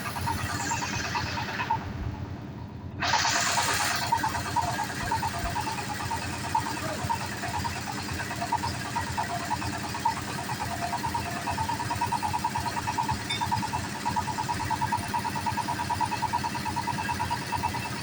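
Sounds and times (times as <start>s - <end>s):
drilling rig engine running: 0.0s - 18.0s
hiss burst: 3.0s - 4.0s.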